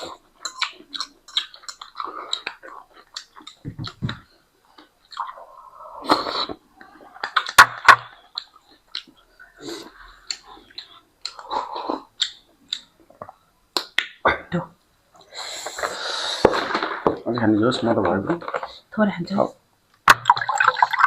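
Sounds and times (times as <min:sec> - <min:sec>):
people chewing noodles: 0:00.0 - 0:13.4.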